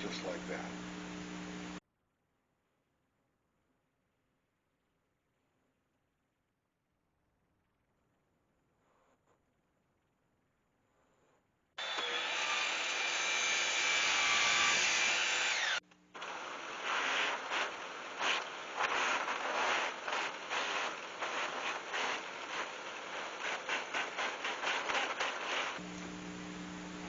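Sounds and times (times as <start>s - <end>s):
pulsing rubbing and cutting noise: 11.8s - 25.8s
power tool running: 11.8s - 27.0s.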